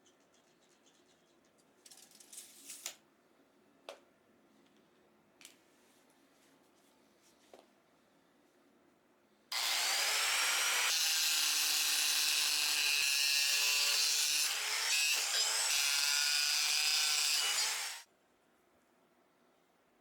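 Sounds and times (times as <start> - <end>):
power tool cutting iron: 9.5 - 18.0.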